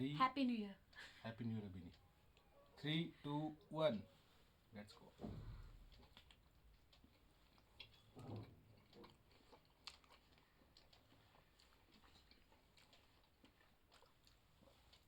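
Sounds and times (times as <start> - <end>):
chewing and biting pizza: 0.8 - 2.5, 5.7 - 15.0.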